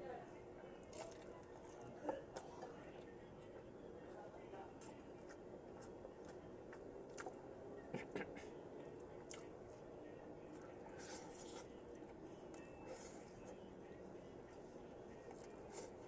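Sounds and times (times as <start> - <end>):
chewing crunchy vegetables: 0.8 - 2.7, 4.8 - 13.7, 14.5 - 16.0.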